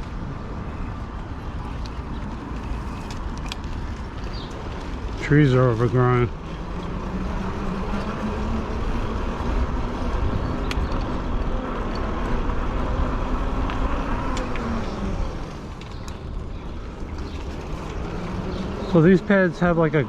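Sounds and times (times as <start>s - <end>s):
motor hum: 0.0s - 20.0s
wind and road rumble: 0.0s - 20.0s.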